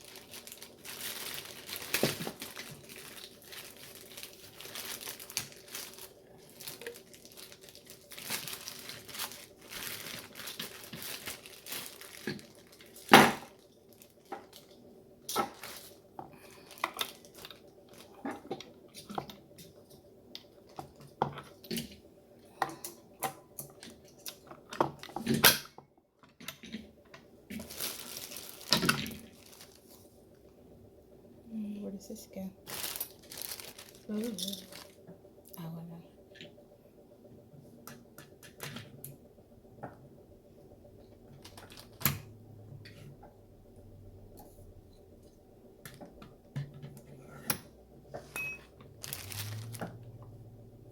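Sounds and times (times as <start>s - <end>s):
packaging rustling and crinkling: 0.0s - 19.2s, 27.5s - 30.1s, 32.6s - 35.1s, 41.3s - 42.1s, 48.9s - 50.2s.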